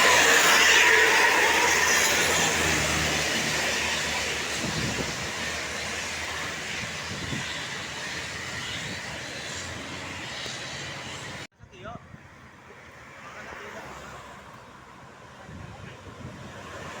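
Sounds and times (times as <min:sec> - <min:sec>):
bus driving past: 0:00.0 - 0:11.5.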